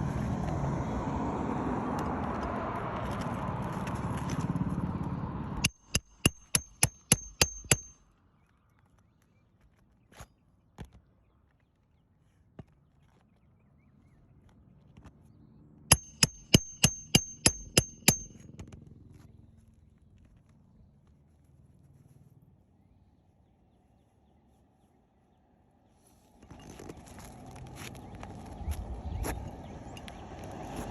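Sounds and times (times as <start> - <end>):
hammer striking nail: 5.6 - 8.0, 15.9 - 18.4.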